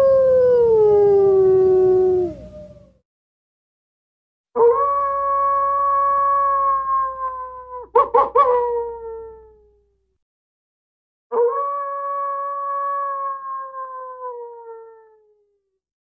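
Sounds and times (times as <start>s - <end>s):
wolf howling: 0.0s - 3.0s, 4.6s - 9.7s, 11.3s - 15.4s
wolf yipping: 7.9s - 8.8s.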